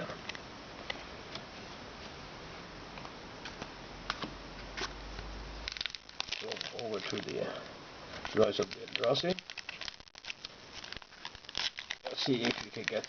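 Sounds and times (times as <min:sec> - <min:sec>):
steady background hiss: 0:00.0 - 0:13.0
trading cards being handled: 0:05.9 - 0:07.4, 0:08.2 - 0:13.0.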